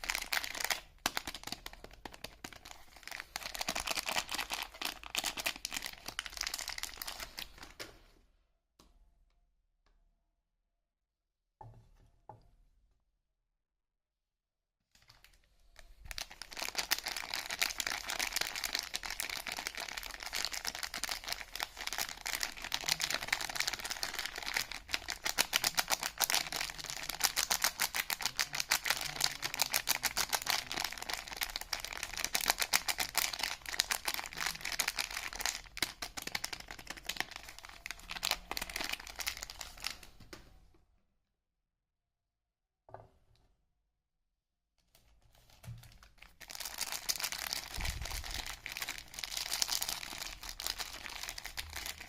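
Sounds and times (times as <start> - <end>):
wrapper crinkling and tearing: 0.0 - 7.8, 16.0 - 40.1, 45.3 - 52.0.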